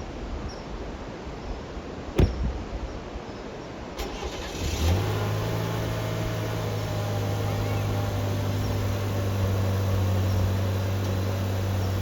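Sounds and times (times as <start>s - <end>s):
vehicle engine starting and idling: 4.0s - 12.0s.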